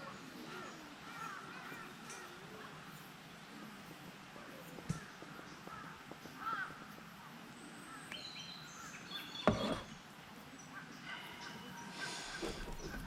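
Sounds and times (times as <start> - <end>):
crow cawing: 5.6 - 6.9.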